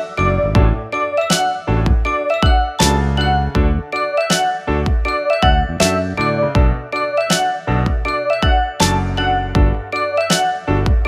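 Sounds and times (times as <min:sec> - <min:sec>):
bright tinkling melody: 0:00.0 - 0:10.9
upbeat background music: 0:00.0 - 0:11.0.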